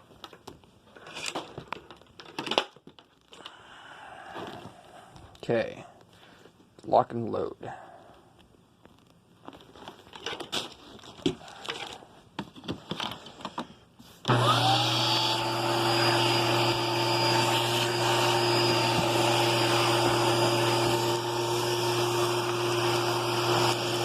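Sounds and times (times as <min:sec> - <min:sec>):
vacuum cleaner motor whine: 0:14.2 - 0:24.0.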